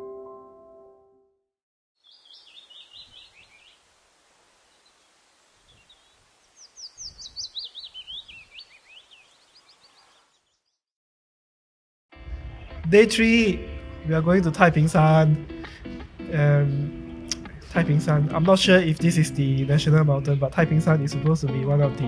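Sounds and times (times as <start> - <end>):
songbird singing: 2.0 - 10.8, 12.8 - 22.0
steady background hiss: 2.4 - 10.2.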